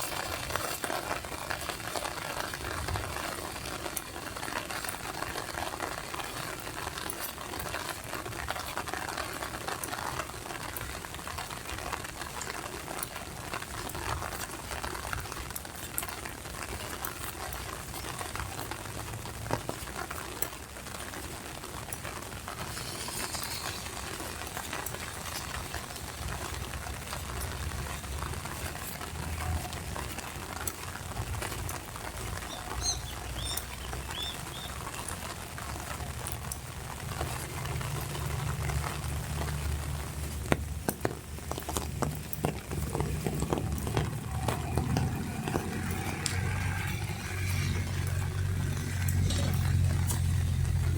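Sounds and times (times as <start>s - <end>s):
rain pattering: 0.0s - 50.9s
bird chirps: 32.4s - 34.8s.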